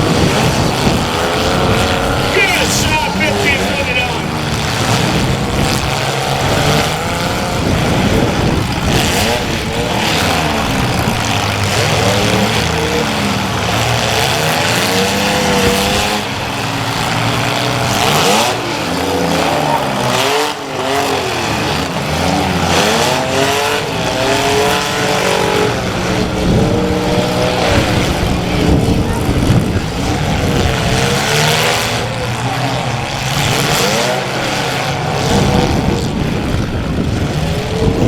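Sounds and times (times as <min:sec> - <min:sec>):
car engines revving: 0:00.0 - 0:38.0.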